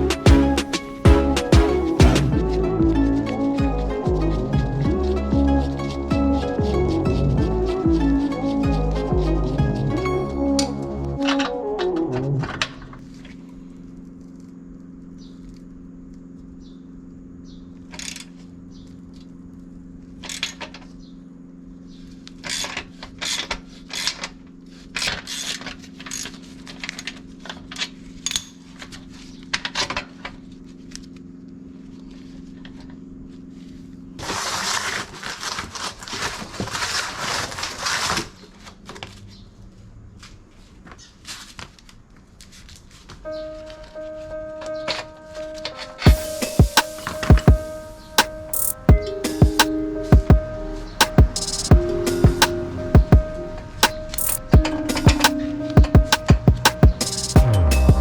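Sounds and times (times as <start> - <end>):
loud hissing rush: 46.1 - 49.7
steady low hum: 46.1 - 58.0.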